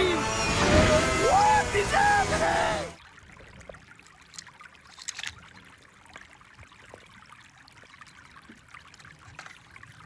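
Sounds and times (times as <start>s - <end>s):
plastic toy clicks and rustles: 4.4s - 5.4s.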